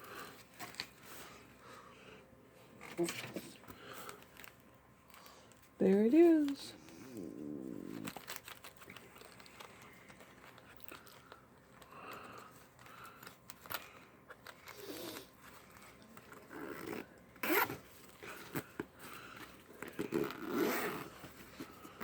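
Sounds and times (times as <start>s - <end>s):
clicks and rustles of fabric case: 7.8s - 22.0s
zipper rasp: 14.6s - 15.4s, 16.4s - 18.8s, 19.8s - 21.4s.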